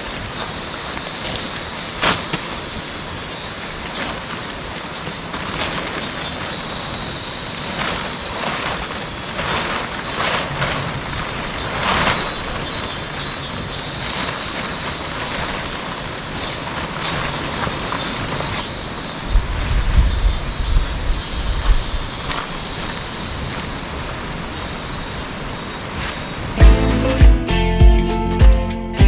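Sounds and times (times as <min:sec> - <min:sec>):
low thumps: 0:26.6 - 0:29.0.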